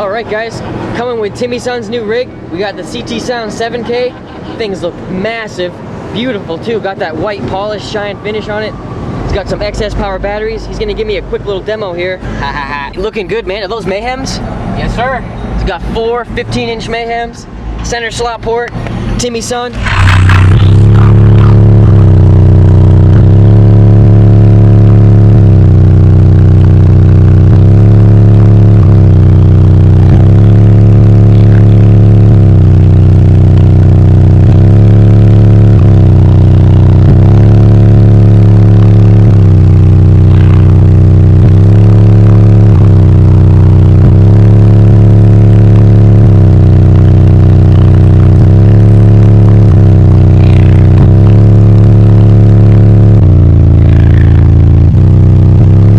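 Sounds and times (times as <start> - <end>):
distorted bass-heavy music: 17.6 - 55.9.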